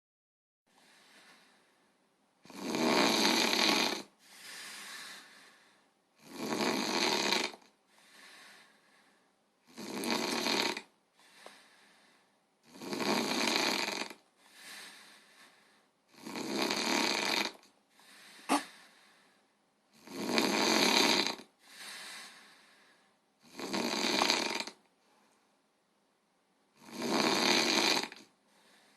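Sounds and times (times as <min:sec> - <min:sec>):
heavy snoring: 0:02.4 - 0:05.6, 0:06.2 - 0:08.8, 0:09.6 - 0:11.6, 0:12.6 - 0:18.9, 0:19.9 - 0:22.8, 0:23.4 - 0:24.8, 0:26.8 - 0:28.8.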